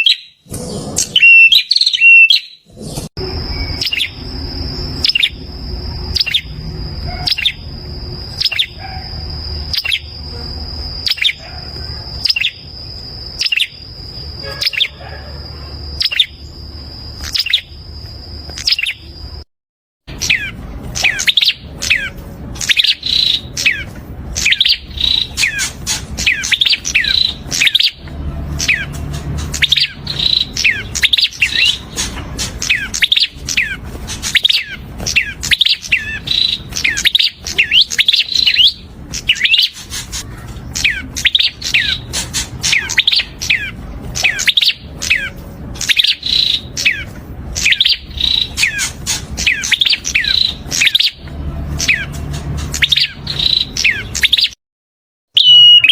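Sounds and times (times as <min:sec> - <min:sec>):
bird high sharp chirps: 0:00.0 - 0:19.4, 0:20.1 - 0:54.6, 0:55.3 - 0:55.9.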